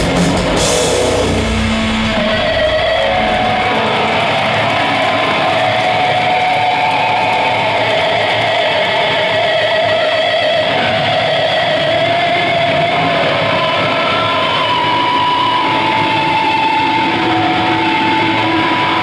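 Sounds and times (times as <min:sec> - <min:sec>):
live metal band playing: 0:00.0 - 0:06.0.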